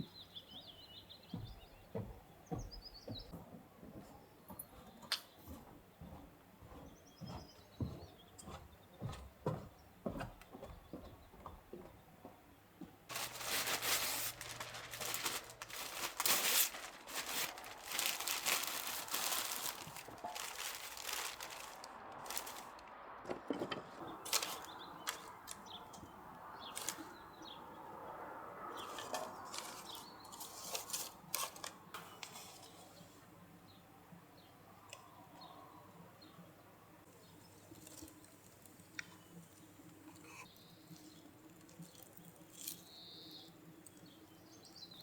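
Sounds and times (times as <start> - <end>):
crinkling and rustling: 13.1 - 27.2, 28.8 - 32.8, 37.4 - 44.2.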